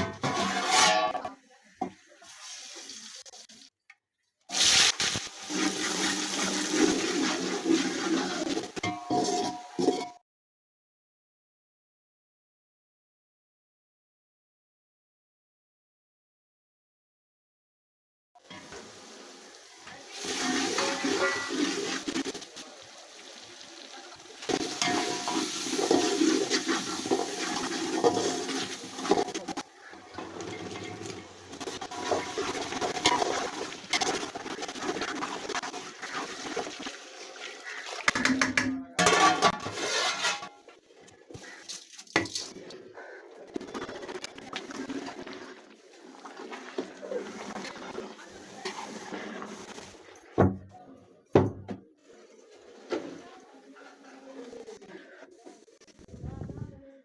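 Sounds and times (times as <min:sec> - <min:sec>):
water splashing into a pot: 0:04.5 - 0:10.1, 0:18.4 - 0:42.8, 0:43.7 - 0:49.8.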